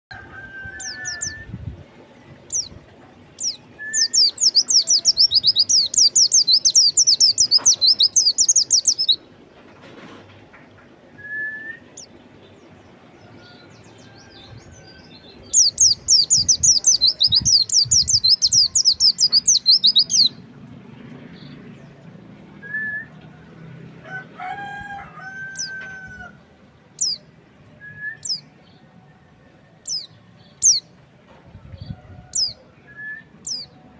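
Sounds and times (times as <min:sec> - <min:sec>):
rooster crowing: 0:00.1 - 0:01.5, 0:24.0 - 0:26.4.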